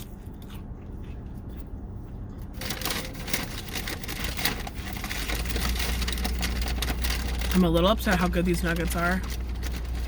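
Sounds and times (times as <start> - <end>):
paper packaging crinkling: 2.6 - 10.0.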